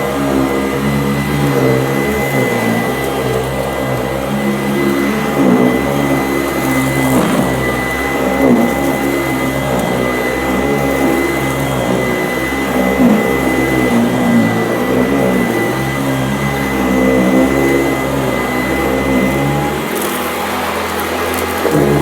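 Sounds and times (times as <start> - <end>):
vacuum cleaner whining: 0.0 - 22.0
vacuum crunching gritty dirt: 0.0 - 22.0.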